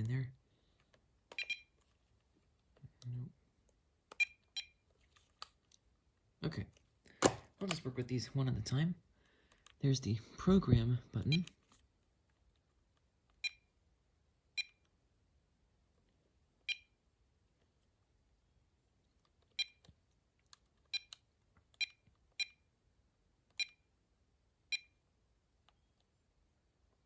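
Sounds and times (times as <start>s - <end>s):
phone key-press beeps: 1.3s - 1.7s, 4.1s - 4.8s, 14.6s - 14.8s, 19.6s - 19.8s, 20.9s - 21.2s, 23.6s - 23.8s, 24.7s - 25.0s.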